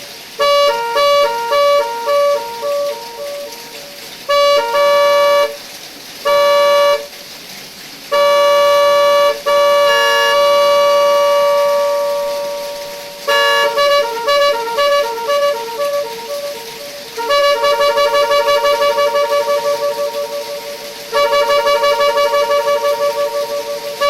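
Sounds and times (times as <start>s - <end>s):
multi-tone electric horn: 0.4s - 7.2s, 8.1s - 24.0s.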